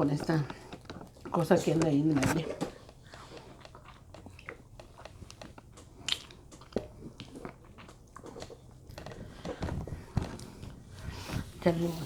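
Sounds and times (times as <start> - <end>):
person chewing and biting food: 2.5 - 10.7
wet mouth clicks: 2.8 - 8.6.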